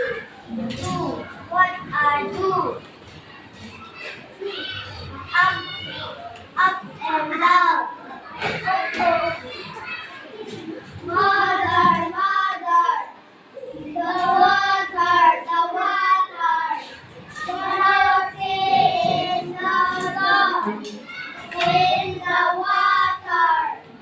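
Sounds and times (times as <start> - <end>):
child singing: 11.0 - 13.1, 13.9 - 23.8.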